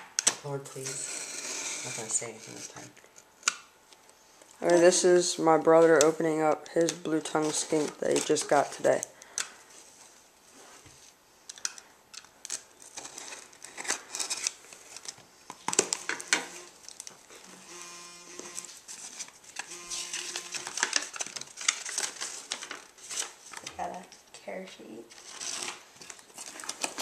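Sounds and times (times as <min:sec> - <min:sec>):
packing material crinkling and tearing: 0:05.9 - 0:09.4, 0:11.5 - 0:17.8, 0:18.4 - 0:24.1, 0:25.1 - 0:27.0.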